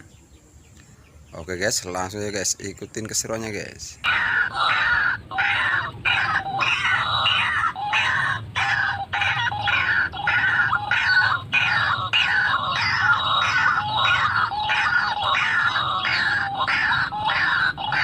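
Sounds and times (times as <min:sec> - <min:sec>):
waterhen calling harshly: 0:04.0 - 0:18.0.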